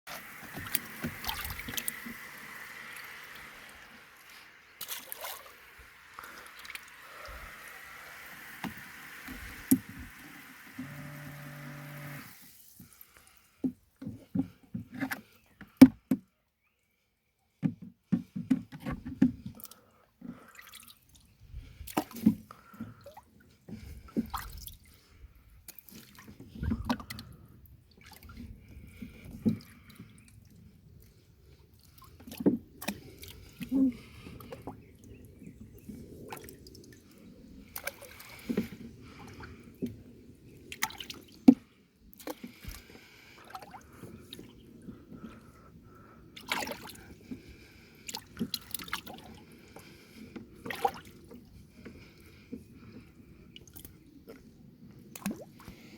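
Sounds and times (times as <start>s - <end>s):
water splashing and dripping: 0.1s - 11.2s, 40.7s - 41.4s.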